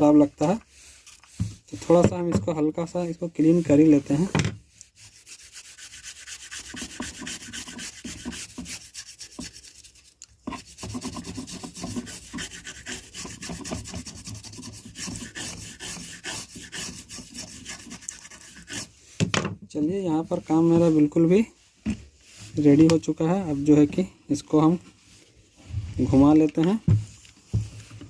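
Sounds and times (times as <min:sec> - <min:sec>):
scrubbing a circuit board: 0:00.1 - 0:19.0, 0:20.1 - 0:21.4.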